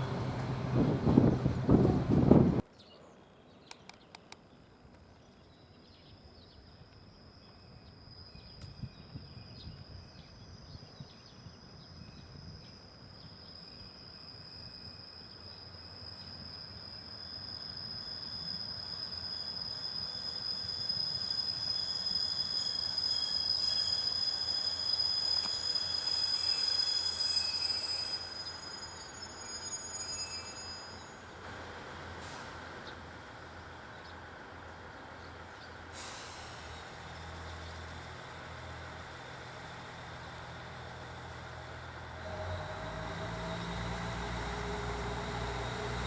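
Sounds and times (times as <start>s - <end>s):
diesel railcar approaching: 0.0s - 2.7s, 5.5s - 46.0s.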